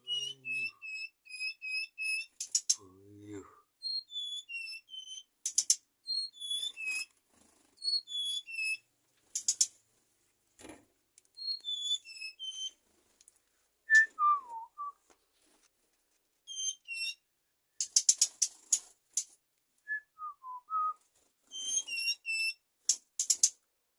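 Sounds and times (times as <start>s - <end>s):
songbird whistled phrases: 0.0s - 2.3s, 13.9s - 15.0s
scratchy bird chatter: 0.0s - 2.9s, 3.9s - 10.0s, 17.8s - 19.4s, 21.0s - 23.6s.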